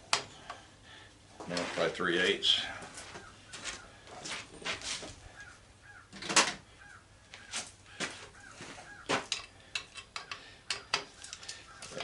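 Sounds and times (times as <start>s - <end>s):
hand tools clicking on metal: 9.1s - 12.0s.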